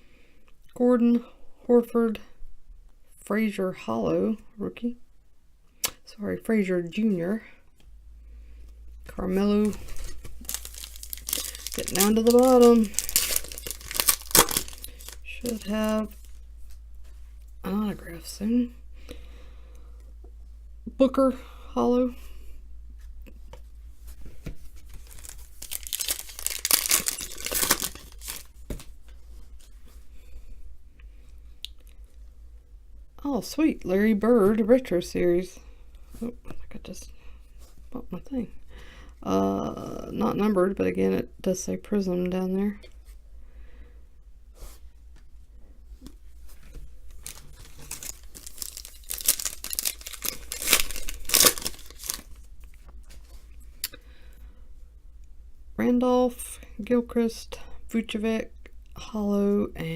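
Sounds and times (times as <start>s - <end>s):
foil wrapper tearing and crinkling: 9.6s - 16.4s, 24.9s - 28.5s, 47.1s - 52.5s.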